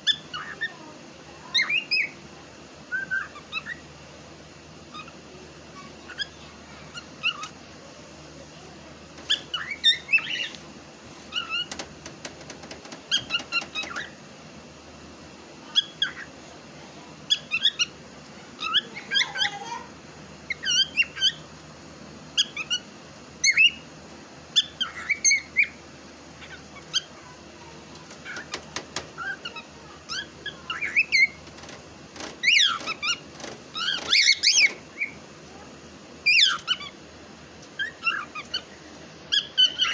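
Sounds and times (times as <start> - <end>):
cockatiel chirping and squeaking: 0.0 - 0.7, 1.5 - 2.2, 2.9 - 3.8, 4.9 - 5.2, 5.8 - 7.6, 9.2 - 10.6, 11.3 - 11.9, 13.1 - 14.2, 15.7 - 16.3, 17.3 - 17.9, 18.6 - 19.7, 20.5 - 21.4, 22.4 - 23.8, 24.5 - 25.8, 26.4 - 27.2, 28.0 - 35.2, 36.2 - 37.0, 37.8 - 38.7, 39.3 - 39.9.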